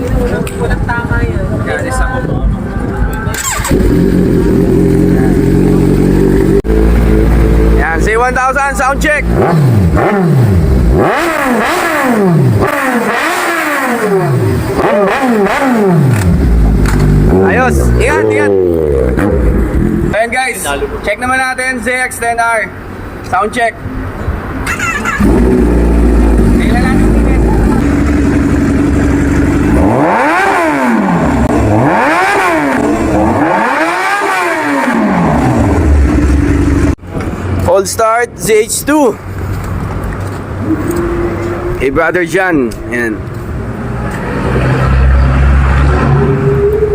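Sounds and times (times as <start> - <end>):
motorcycle engine revving: 3.3 - 20.2, 24.6 - 37.0.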